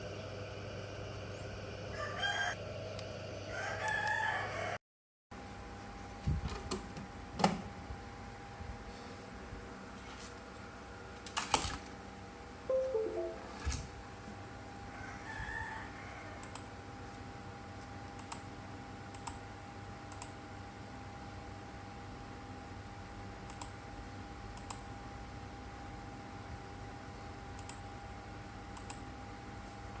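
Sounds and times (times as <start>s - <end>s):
rooster crowing faintly: 14.9s - 16.6s.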